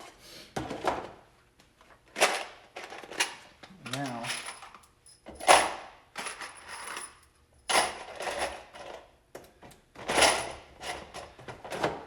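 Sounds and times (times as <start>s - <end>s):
screws rattling into plastic bin: 2.1s - 4.8s.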